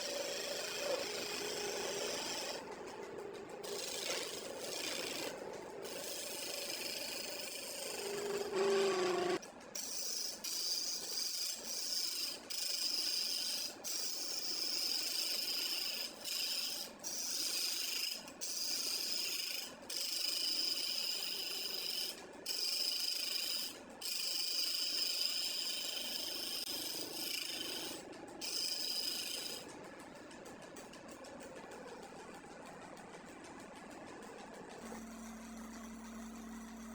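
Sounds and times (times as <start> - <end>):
sanding wood: 0.0 - 2.5.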